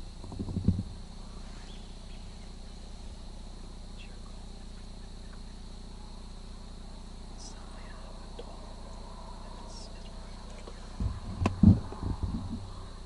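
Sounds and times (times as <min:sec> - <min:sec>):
insects trilling: 0:00.0 - 0:13.0
low steady hum: 0:00.0 - 0:13.0
faint bird chirps: 0:00.4 - 0:13.0
low bump or rustle: 0:10.5 - 0:12.8.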